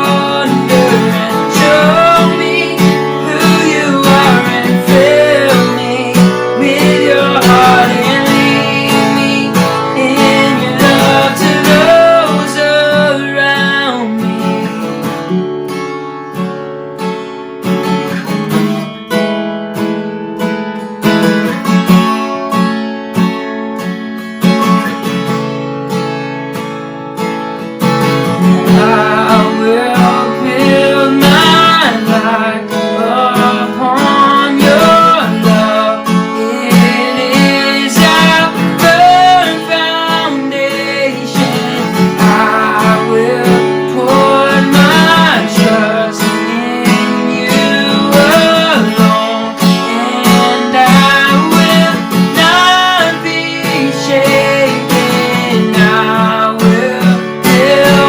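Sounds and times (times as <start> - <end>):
strummed acoustic guitar: 0.0 - 58.0.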